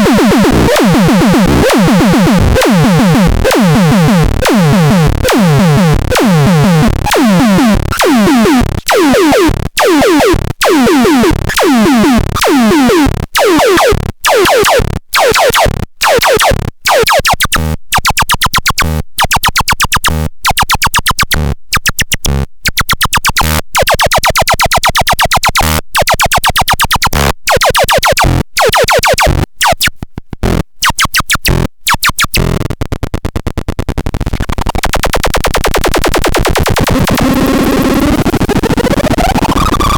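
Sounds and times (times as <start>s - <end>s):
stuttering synthesizer music: 0.0s - 22.0s, 27.5s - 29.8s, 34.3s - 39.9s.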